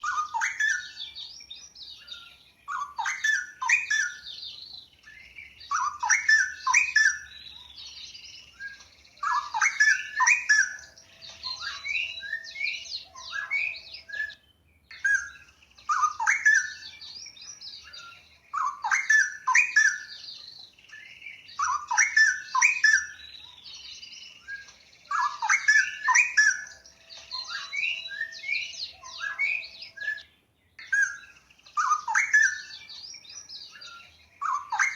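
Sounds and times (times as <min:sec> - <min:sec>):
bird warbling song: 0:00.0 - 0:34.9.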